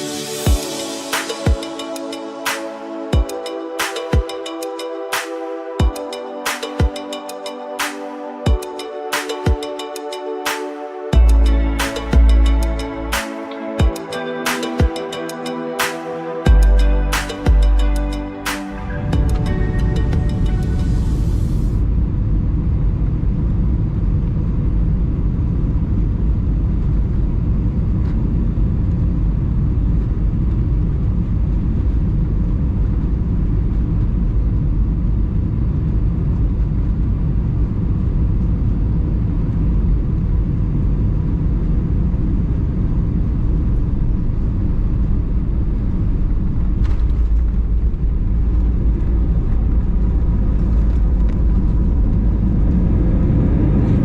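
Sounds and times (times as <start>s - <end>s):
airplane cabin rumble: 18.9s - 54.0s.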